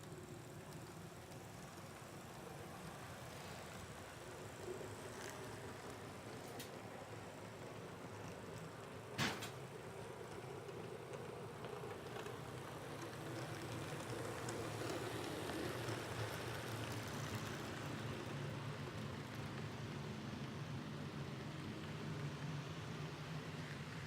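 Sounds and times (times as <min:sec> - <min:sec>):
train wheels rolling: 0:00.0 - 0:24.0
model train motor humming: 0:09.8 - 0:20.8.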